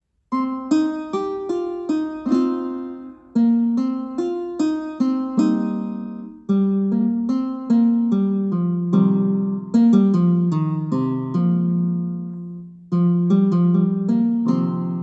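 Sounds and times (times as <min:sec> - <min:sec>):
keyboard-like ringtone melody: 0:00.3 - 0:08.2.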